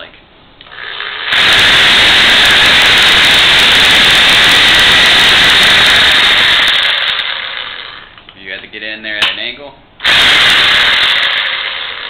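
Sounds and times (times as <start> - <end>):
reciprocating saw buzzing: 0.6 - 8.2, 10.0 - 12.0.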